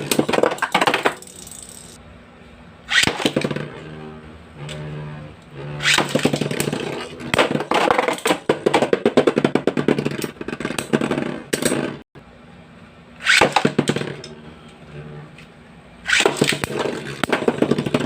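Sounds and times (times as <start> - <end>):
spinning tops clashing and rattling: 0.0 - 2.0
spinning tops humming: 1.0 - 2.0.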